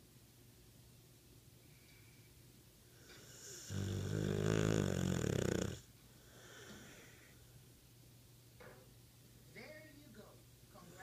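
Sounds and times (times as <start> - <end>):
dog snoring: 3.0 - 7.3.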